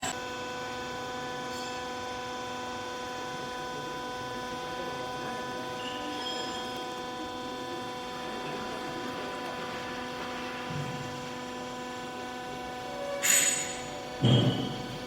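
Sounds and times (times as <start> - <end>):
hydraulic press motor humming: 0.0 - 15.0.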